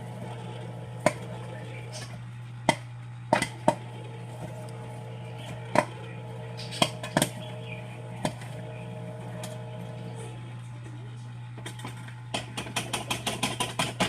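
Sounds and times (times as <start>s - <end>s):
popcorn kernels popping: 0.0s - 4.0s, 4.6s - 8.7s, 11.6s - 14.0s
popcorn machine humming: 0.0s - 14.0s.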